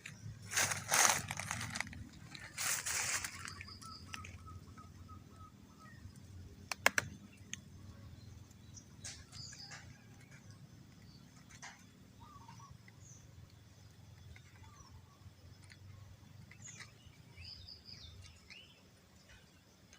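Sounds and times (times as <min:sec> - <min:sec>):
rustling: 0:00.0 - 0:04.4
sharp clicks: 0:06.6 - 0:07.7.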